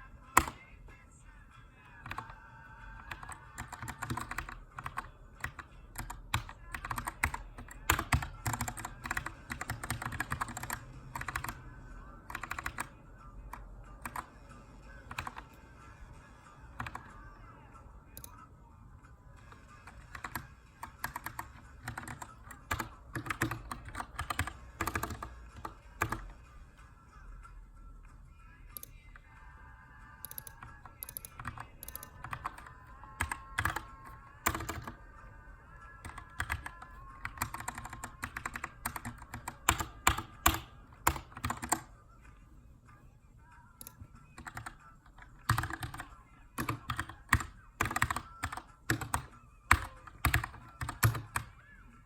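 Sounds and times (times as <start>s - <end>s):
faint background music: 0.0s - 52.0s
mechanical keyboard typing: 0.3s - 0.7s, 2.0s - 14.3s, 15.0s - 15.6s, 16.8s - 17.2s, 19.4s - 26.4s, 30.2s - 35.0s, 36.0s - 41.9s, 43.8s - 51.6s.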